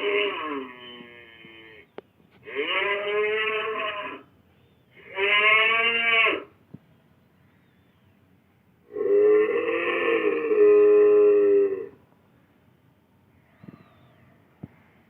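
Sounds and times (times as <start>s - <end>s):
cattle mooing: 0.0s - 4.3s, 5.0s - 6.5s, 8.9s - 11.9s.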